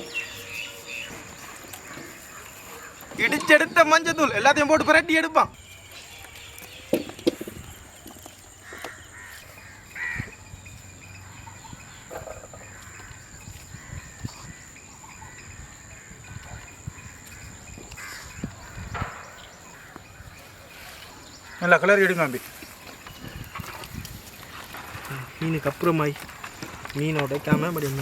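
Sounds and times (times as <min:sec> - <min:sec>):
outdoor ambience: 0:00.0 - 0:28.0
crows cawing: 0:08.6 - 0:10.4, 0:12.2 - 0:20.4, 0:21.4 - 0:22.6.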